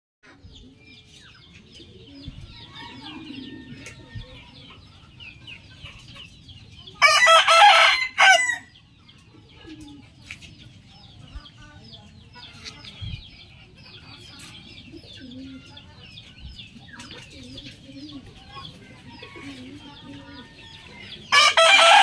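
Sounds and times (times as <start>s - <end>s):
rooster crowing: 7.0s - 8.7s, 20.7s - 22.0s.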